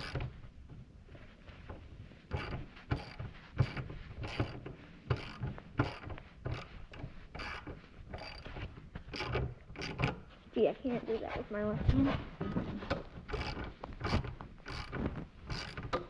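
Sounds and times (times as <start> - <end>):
ratchet wrench clicking: 2.3 - 10.2, 13.3 - 16.0.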